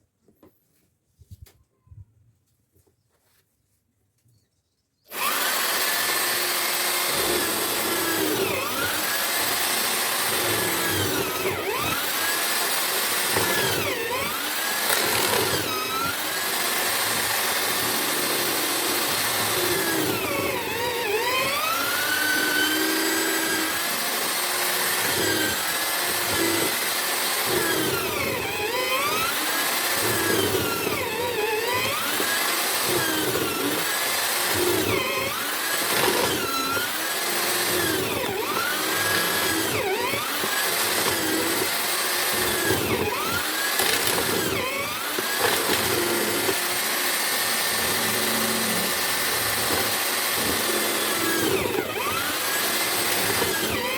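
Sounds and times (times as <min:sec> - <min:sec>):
drill-powered mortiser motor: 0:05.1 - 0:53.9.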